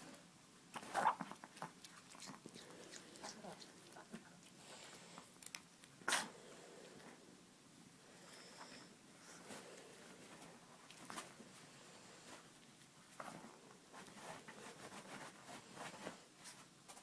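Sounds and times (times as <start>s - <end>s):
dog chewing fruit: 0.7s - 5.9s.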